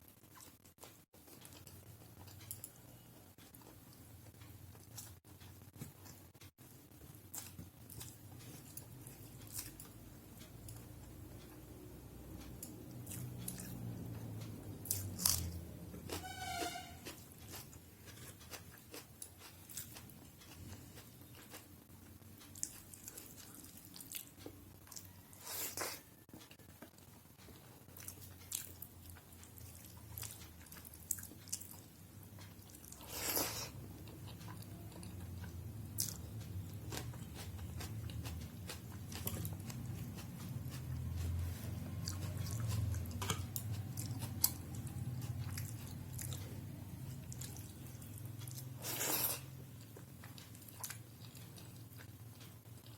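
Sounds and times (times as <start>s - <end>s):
chewing with crunches: 0.0s - 6.4s, 7.0s - 16.2s, 17.0s - 52.9s.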